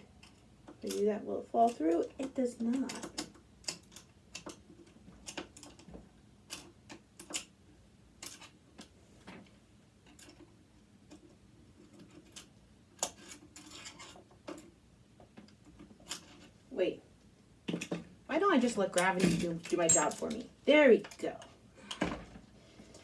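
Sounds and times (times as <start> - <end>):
screwdriver and metal parts clicking: 0.1 - 5.9, 18.9 - 21.5.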